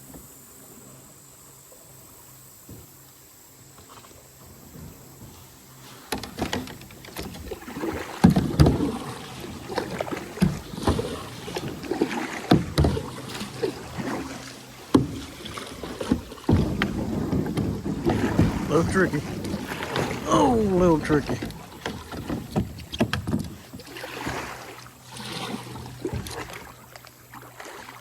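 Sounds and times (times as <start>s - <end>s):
paddle splashing in water: 1.7s - 28.0s
paddle knocking against hull: 3.8s - 28.0s.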